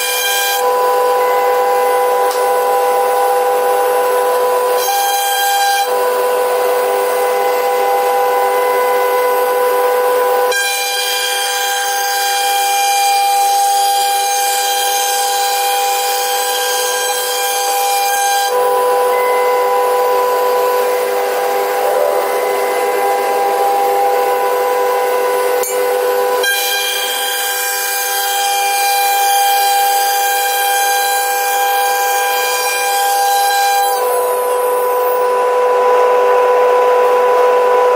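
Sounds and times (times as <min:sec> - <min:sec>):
router spindle whining: 0:00.0 - 0:37.9.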